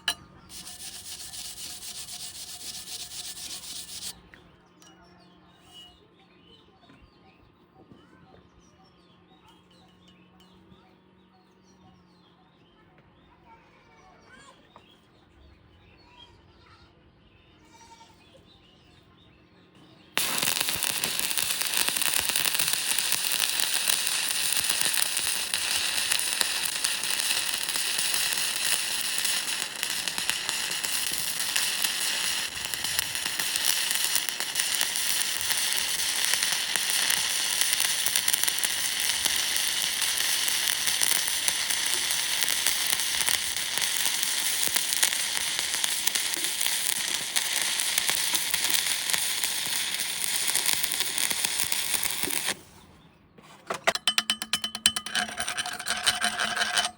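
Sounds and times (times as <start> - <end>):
welding arc crackling and sizzling: 0.0 - 4.2, 20.2 - 52.6, 53.9 - 56.9
faint birdsong: 0.0 - 31.8, 32.4 - 56.6.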